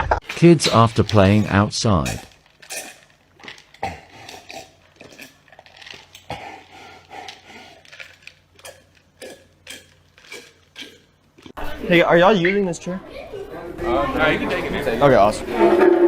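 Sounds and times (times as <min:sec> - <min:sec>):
person chewing and crunching food: 0:00.2 - 0:11.6.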